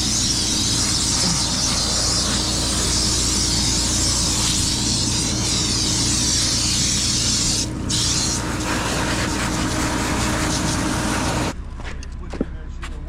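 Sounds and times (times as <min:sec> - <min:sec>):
spraying hiss: 0:00.0 - 0:11.5
low engine hum: 0:00.0 - 0:13.0.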